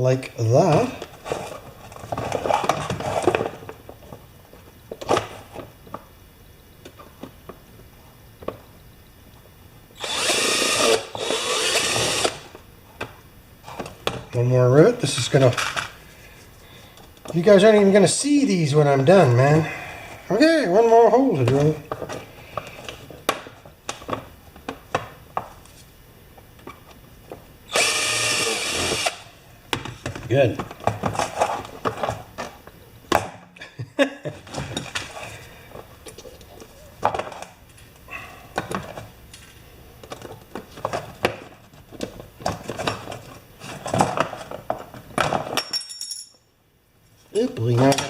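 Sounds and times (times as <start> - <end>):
tools and parts clattering: 42.0 - 46.5
metal tools clinking on workbench: 45.6 - 46.5.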